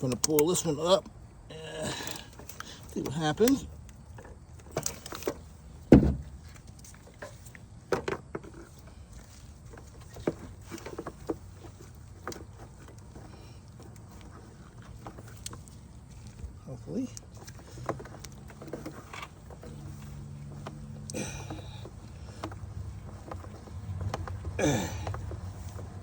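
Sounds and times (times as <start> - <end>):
hose fitting knocks and clunks: 4.2 - 8.7, 17.4 - 26.0.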